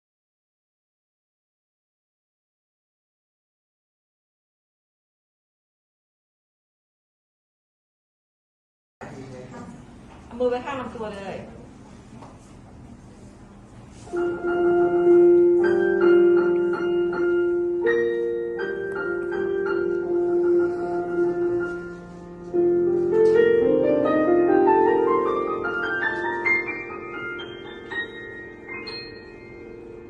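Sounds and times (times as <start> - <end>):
piano playing: 14.1 - 30.0.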